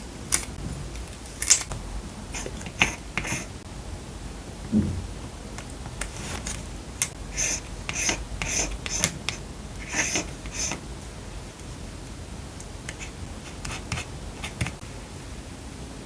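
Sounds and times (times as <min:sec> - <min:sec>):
soft thump: 0:04.7 - 0:05.2.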